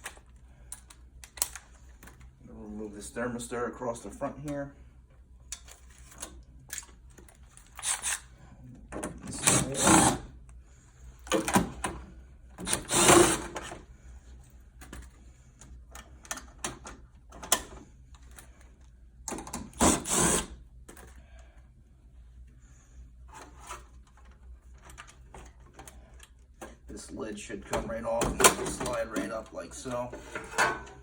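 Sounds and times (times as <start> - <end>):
power drill driving screws: 7.7 - 8.3, 9.4 - 10.2, 12.6 - 13.6, 19.7 - 20.6.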